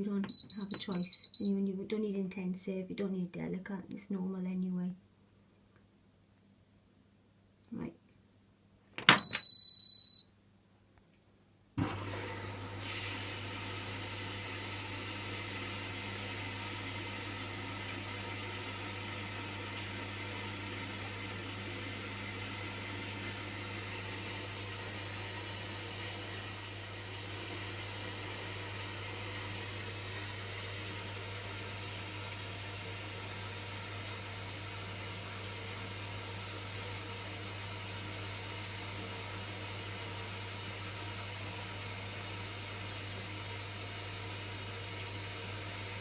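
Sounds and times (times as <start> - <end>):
washing machine click: 9.0 - 9.6
washing machine running: 11.8 - 46.0
water filling with hiss and hum: 11.8 - 46.0.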